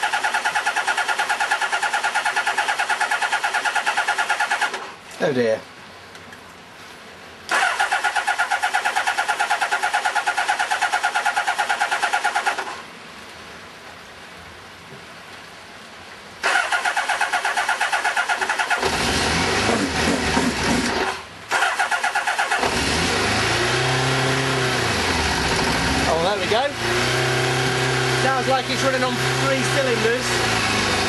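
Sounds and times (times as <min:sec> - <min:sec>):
electric starter cranking engine: 0:00.0 - 0:04.9, 0:07.5 - 0:12.8, 0:16.4 - 0:26.1
motorcycle engine running raggedly: 0:18.5 - 0:21.1, 0:22.6 - 0:31.0.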